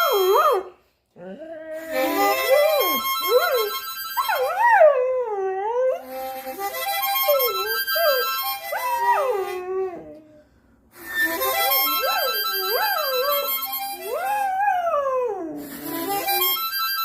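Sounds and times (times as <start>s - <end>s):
harmonica chords: 1.8s - 4.6s, 6.0s - 9.8s, 10.9s - 14.3s, 15.6s - 17.0s.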